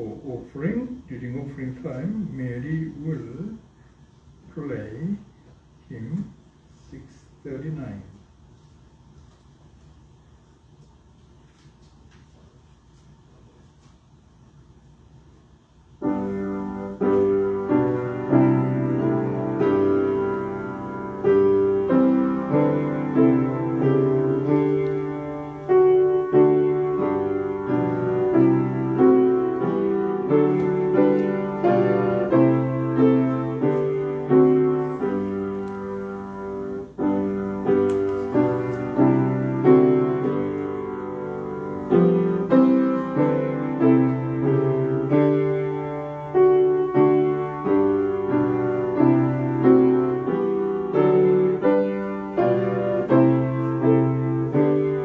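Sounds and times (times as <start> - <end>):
piano playing slow hymn chords: 16.0 - 55.0.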